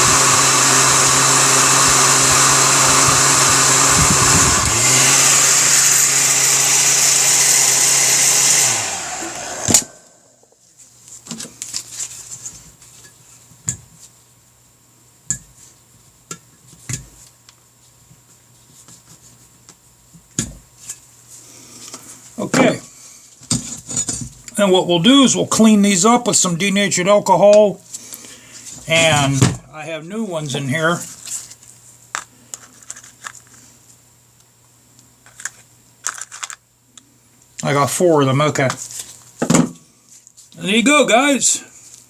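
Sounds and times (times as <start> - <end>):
heat gun motor and air rush: 0.0 - 10.4.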